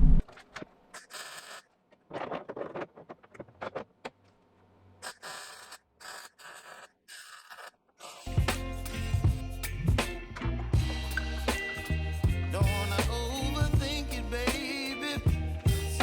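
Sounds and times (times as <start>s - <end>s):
music with steady beat: 8.3s - 16.0s.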